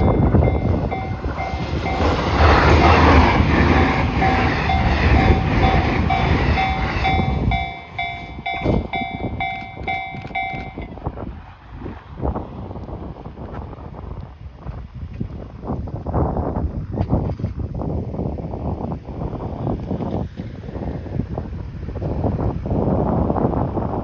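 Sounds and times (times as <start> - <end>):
level crossing bell dinging: 0.0 - 3.3, 4.2 - 10.9
train wheel clacks: 0.0 - 11.0
electric train passing: 0.0 - 13.4.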